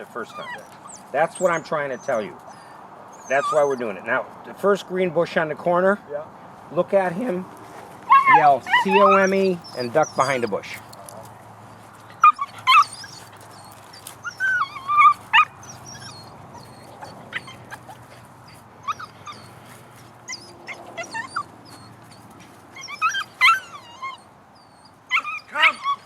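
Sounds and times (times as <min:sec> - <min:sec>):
puppy whining and yipping: 0:00.0 - 0:04.1, 0:08.0 - 0:26.0.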